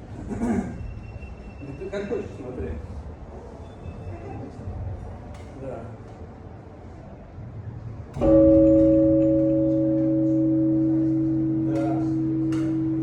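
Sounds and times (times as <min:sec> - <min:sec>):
large church bell ringing: 0:08.2 - 0:13.0.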